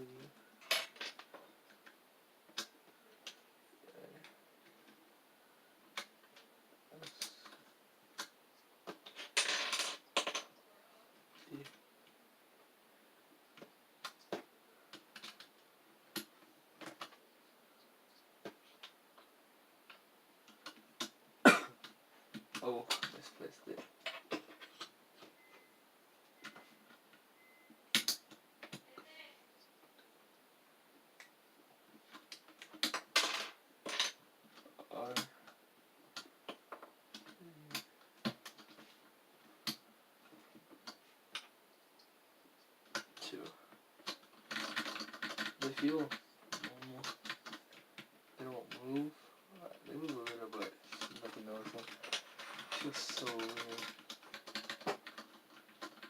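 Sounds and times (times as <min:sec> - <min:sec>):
keycaps clicking and tapping: 0:13.6 - 0:17.2, 0:27.9 - 0:29.1, 0:32.1 - 0:38.9, 0:42.8 - 0:48.2, 0:48.9 - 0:56.0.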